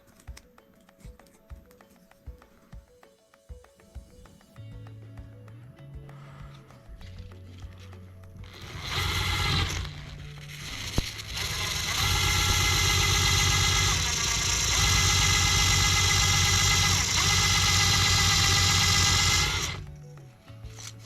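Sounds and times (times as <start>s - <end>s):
small motor running: 8.4s - 20.0s.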